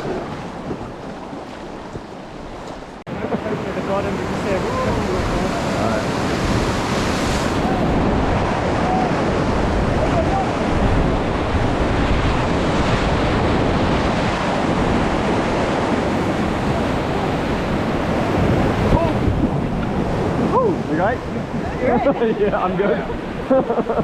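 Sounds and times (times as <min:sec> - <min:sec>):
wind buffeting microphone: 0:00.0 - 0:24.0
river whitewater rushing: 0:03.0 - 0:12.5.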